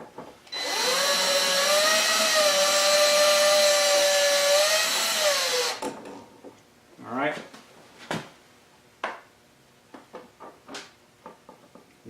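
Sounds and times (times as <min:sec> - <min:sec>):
drill motor whine: 0:00.5 - 0:05.8.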